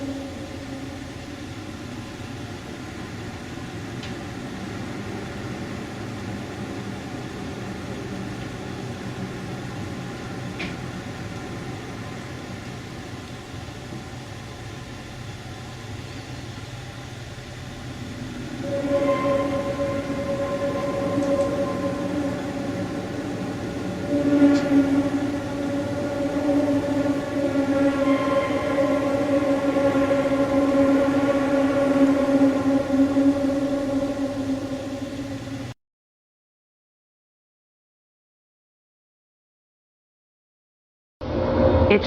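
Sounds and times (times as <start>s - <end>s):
loud pitched drone: 0.0s - 35.8s, 41.2s - 42.0s
low droning rumble: 0.0s - 35.8s
faint held tones: 18.0s - 35.7s.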